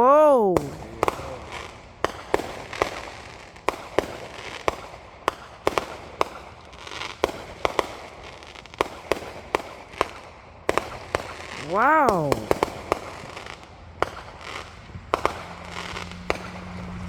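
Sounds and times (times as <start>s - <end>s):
fireworks bangs and pops: 0.5s - 16.8s
fireworks crackle: 0.6s - 11.6s.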